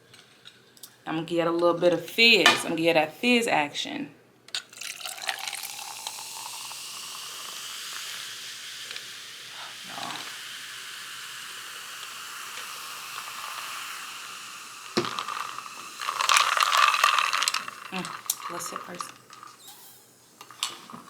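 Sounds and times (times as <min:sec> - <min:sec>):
soft drink fizzing: 0:04.6 - 0:21.0.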